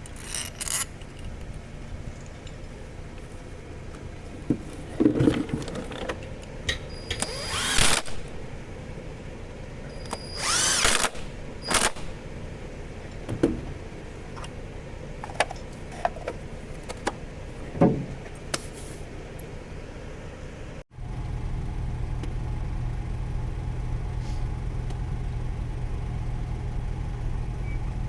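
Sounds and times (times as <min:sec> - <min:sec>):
power tool spinning up: 0:07.0 - 0:08.4, 0:10.0 - 0:12.2.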